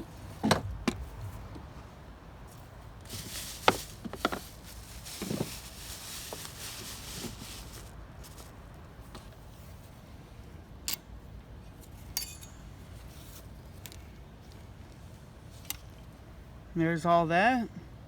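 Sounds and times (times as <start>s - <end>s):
soft rustle: 0.1s - 10.3s.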